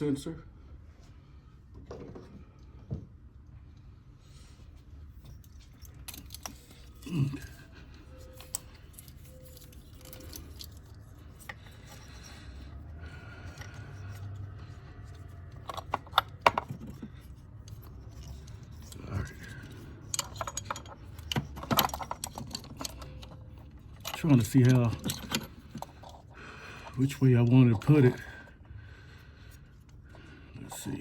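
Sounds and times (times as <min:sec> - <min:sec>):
light clicks and clinks of tools: 0:05.2 - 0:28.5.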